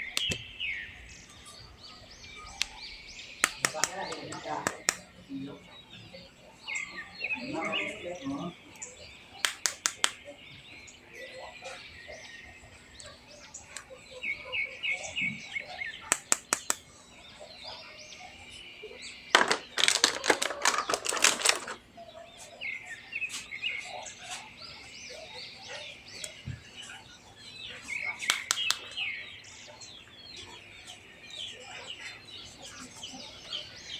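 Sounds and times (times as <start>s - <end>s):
small birds chirping: 0.0s - 33.9s
sharp clicks: 9.4s - 10.2s, 16.1s - 16.8s, 28.2s - 28.9s.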